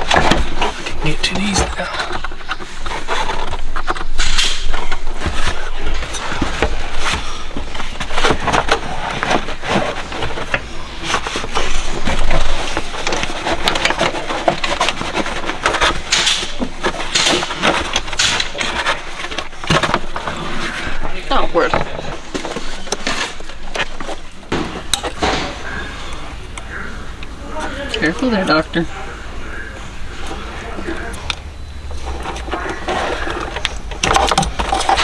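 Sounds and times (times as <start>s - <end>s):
clicks and scrapes of car trim: 0.0s - 25.8s.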